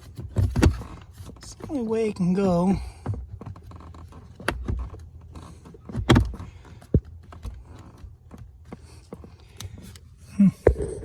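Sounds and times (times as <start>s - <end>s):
blower motor housing clicks and knocks: 0.0s - 8.6s.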